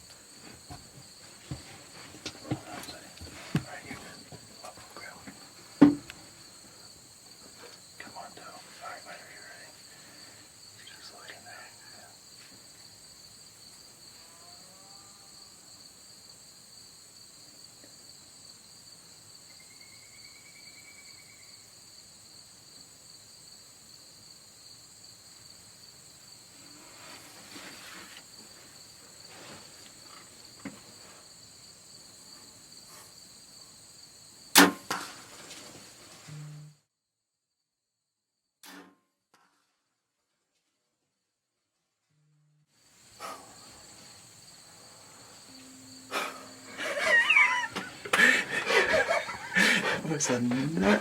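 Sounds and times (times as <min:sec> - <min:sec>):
insects chirring: 0:00.0 - 0:36.8, 0:42.8 - 0:51.0
arrow hitting animal: 0:34.5 - 0:35.4, 0:38.6 - 0:38.9.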